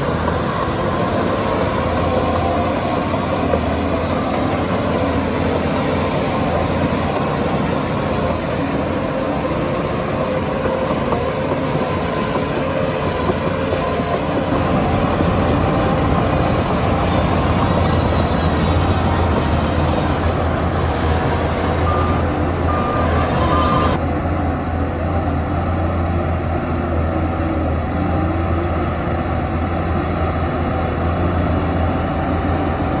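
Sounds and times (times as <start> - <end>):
bulldozer diesel engine running: 0.0 - 33.0.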